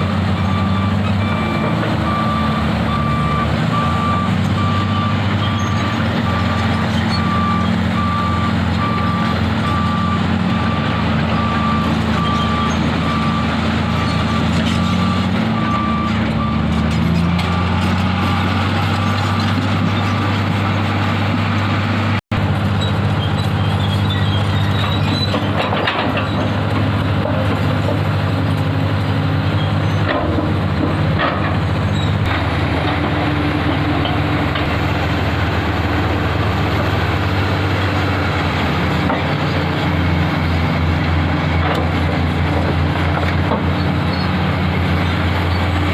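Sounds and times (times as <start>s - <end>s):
diesel truck engine running: 0.0s - 45.9s
reversing alarm beeping: 0.3s - 16.8s
metal clanks and knocks: 25.0s - 28.1s, 29.9s - 34.8s, 41.5s - 44.0s.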